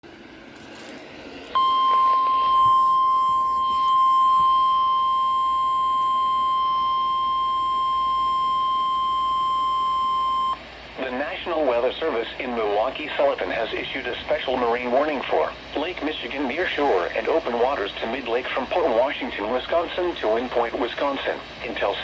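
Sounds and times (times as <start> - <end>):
steady high alarm beep: 1.6 - 10.6.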